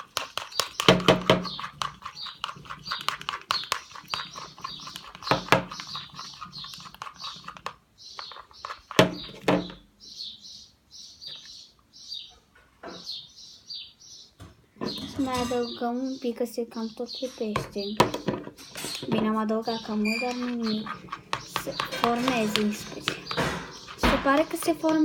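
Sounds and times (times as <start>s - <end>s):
slime being stirred and squished: 0.0s - 9.8s, 17.5s - 25.0s
small bird chirping: 0.0s - 25.0s.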